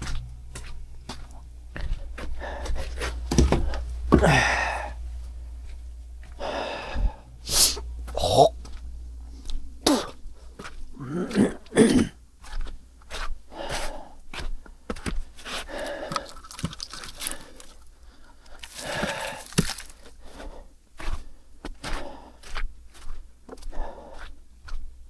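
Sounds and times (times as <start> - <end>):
objects knocking and scraping: 2.8 - 4.6
short coughs: 11.0 - 12.2.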